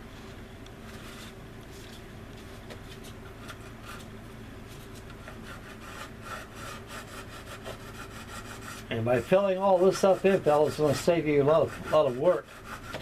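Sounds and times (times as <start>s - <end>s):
steady low hum: 0.0s - 13.0s
sanding strokes on resin: 5.2s - 13.0s.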